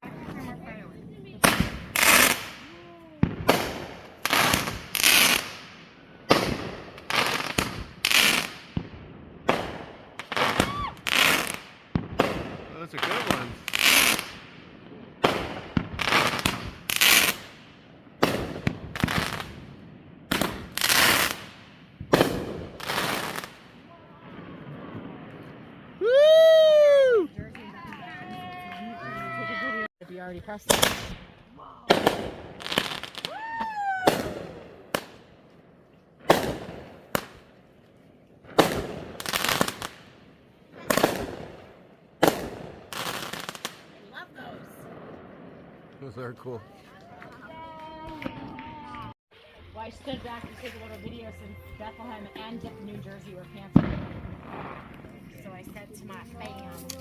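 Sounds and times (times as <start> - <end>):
fireworks banging and crackling: 0.0 - 49.2, 51.8 - 57.0
falling firework whistle: 10.5 - 11.4, 26.0 - 27.3, 33.1 - 34.4.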